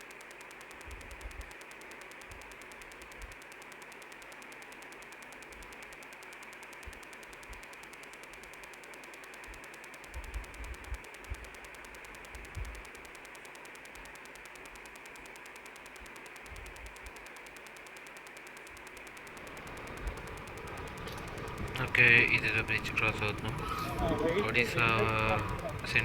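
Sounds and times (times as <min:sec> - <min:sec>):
low thuds of wind buffeting: 0:19.3 - 0:26.0
wind and road noise: 0:19.4 - 0:26.0.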